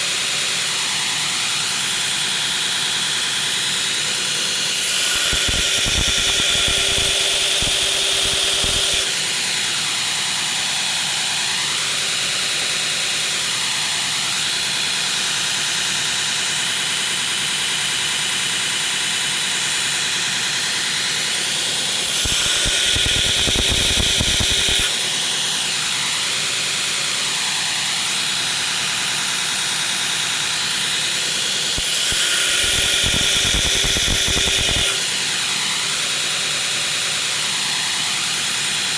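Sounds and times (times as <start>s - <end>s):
belt grinder running: 0.9s - 12.2s, 19.2s - 38.9s.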